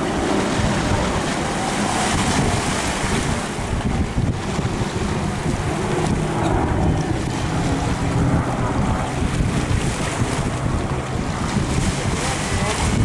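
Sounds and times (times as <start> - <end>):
piston aircraft engine flying past: 0.0 - 13.0
wind buffeting microphone: 0.0 - 13.0.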